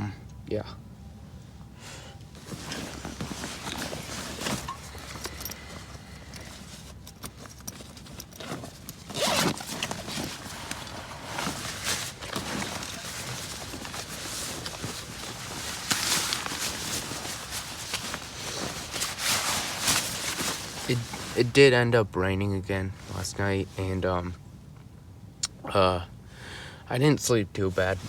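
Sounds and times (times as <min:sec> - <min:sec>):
camping gear rustling: 0:01.1 - 0:21.9, 0:27.6 - 0:28.0.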